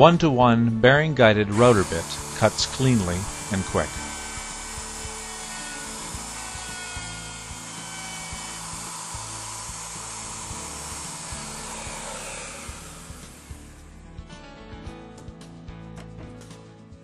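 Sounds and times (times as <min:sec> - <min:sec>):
router cutting wood: 0:01.4 - 0:14.0.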